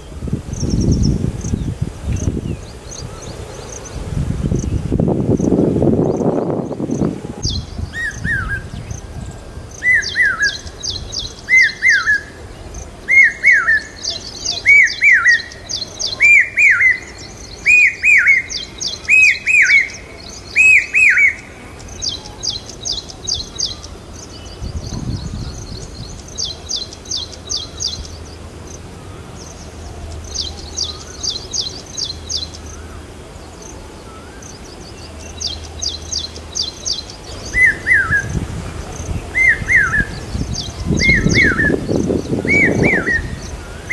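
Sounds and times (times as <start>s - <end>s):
hawk cuckoo calling: 13.1s - 22.5s.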